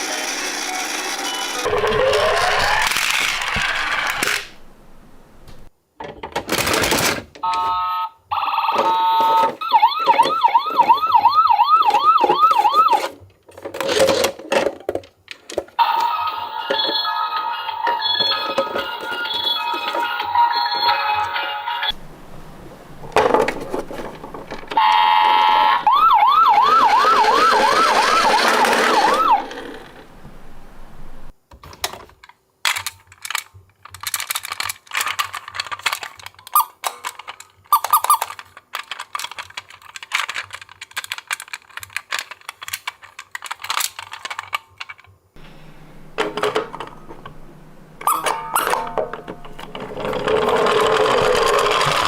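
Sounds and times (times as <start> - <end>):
toy electronic siren: 7.4 - 13.2, 15.8 - 21.7, 24.8 - 29.8, 36.5 - 36.8, 37.7 - 38.4, 48.0 - 49.4
small plastic clicks and rattles: 31.6 - 45.2.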